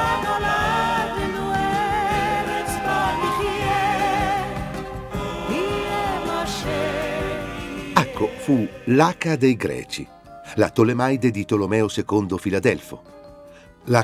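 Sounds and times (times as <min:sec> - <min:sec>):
slow melody with vibrato: 0:00.0 - 0:10.6.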